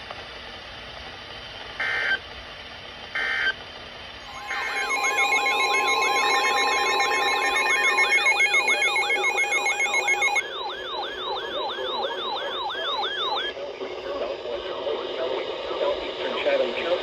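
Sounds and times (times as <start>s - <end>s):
two-tone attention signal: 4.2s - 13.5s
steady warning tone: 4.2s - 14.4s.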